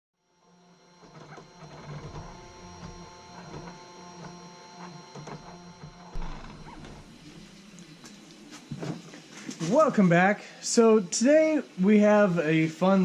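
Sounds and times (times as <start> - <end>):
stepper motors whining: 0.5 - 10.1.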